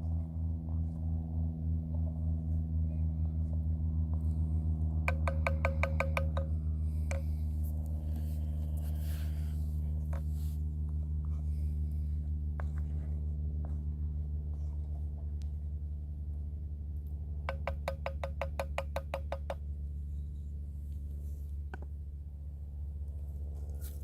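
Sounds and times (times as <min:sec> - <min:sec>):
low droning chord: 0:00.0 - 0:17.5.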